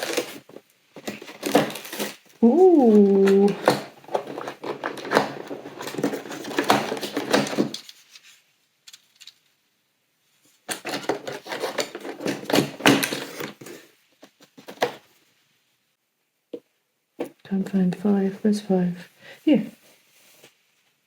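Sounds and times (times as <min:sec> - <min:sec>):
packaging rustling and clicking: 0:00.0 - 0:08.3, 0:10.7 - 0:15.1.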